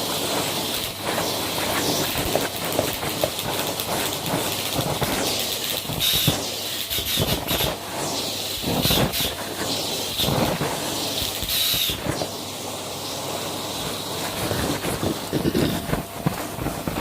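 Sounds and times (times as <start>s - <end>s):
sharp crackly crunching: 0.6s - 7.8s, 13.8s - 17.0s.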